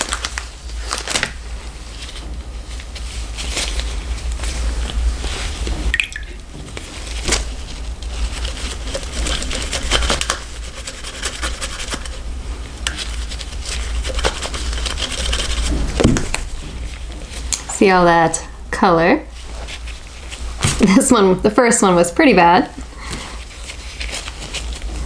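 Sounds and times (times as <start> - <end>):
low steady hum: 0.0 - 25.0
scratchy scraping: 6.8 - 17.4.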